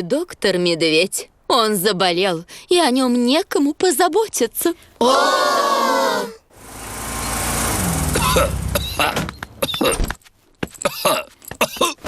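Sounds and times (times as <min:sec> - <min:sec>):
cartoon car engine: 0:06.5 - 0:09.7
short coughs: 0:08.2 - 0:10.1, 0:10.8 - 0:12.0.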